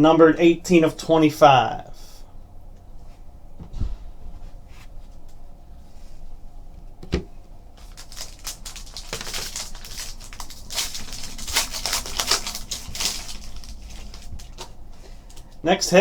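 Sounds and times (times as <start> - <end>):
cards crinkling and rustling: 7.8 - 15.6.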